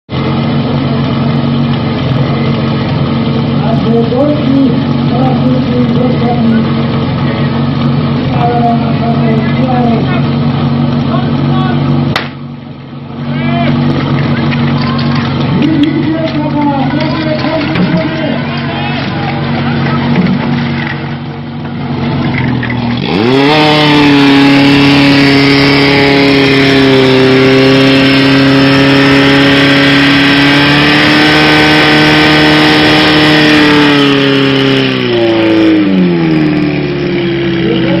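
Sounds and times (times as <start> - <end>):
pump engine revving: 0.1 - 38.0.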